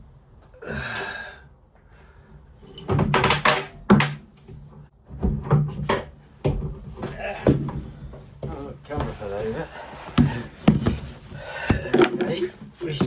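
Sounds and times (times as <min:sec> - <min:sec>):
heavy thuds and knocks: 0:02.8 - 0:09.5, 0:10.1 - 0:13.0.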